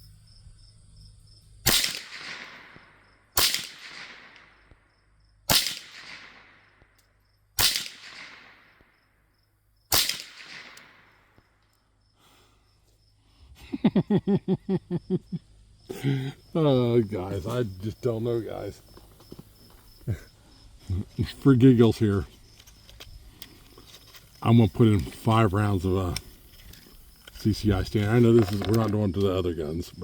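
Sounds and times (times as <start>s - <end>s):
rifle shots: 1.6s - 4.7s, 5.5s - 6.8s, 7.6s - 8.8s, 9.9s - 11.4s.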